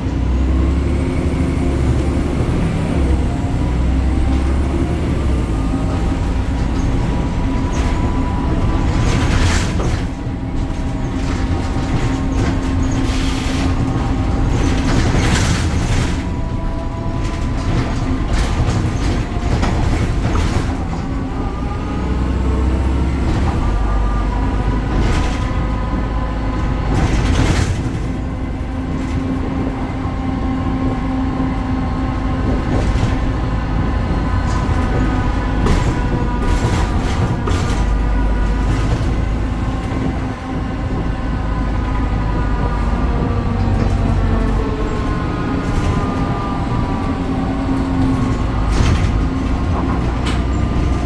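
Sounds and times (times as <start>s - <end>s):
bus engine humming: 0.0s - 51.0s
short rattles and knocks: 4.2s - 31.8s.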